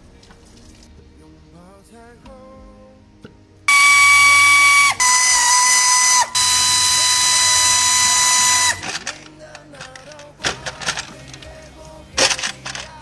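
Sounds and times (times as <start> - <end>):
power tool motor whining: 3.7 - 11.6, 12.2 - 13.0.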